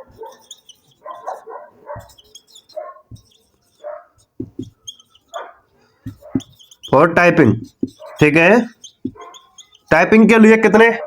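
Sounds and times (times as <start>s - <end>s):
dog barking: 0.0s - 0.4s, 1.0s - 3.1s, 3.8s - 4.2s, 5.3s - 5.6s, 8.0s - 8.3s.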